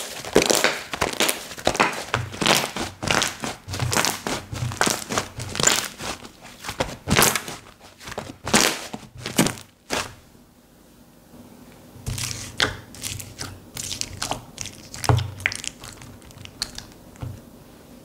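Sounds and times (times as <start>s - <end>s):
slime squishing by hand: 0.0s - 10.2s, 12.0s - 17.4s.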